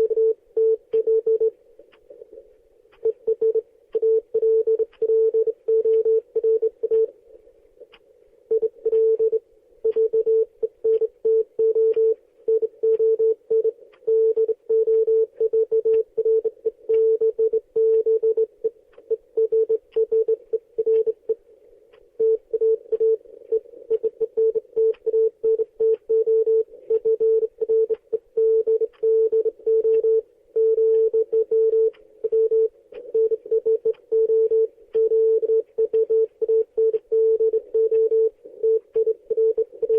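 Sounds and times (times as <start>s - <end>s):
morse code beeps: 22.2s - 39.9s.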